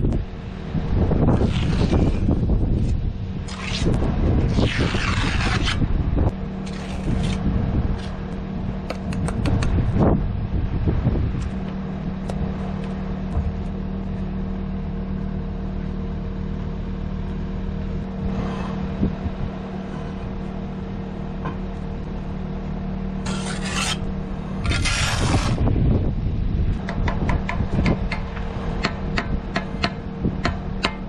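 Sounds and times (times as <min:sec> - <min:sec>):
motor humming: 0:00.0 - 0:31.0
rasping scrapes: 0:01.3 - 0:05.9, 0:06.6 - 0:07.4, 0:19.7 - 0:20.4, 0:23.2 - 0:25.6.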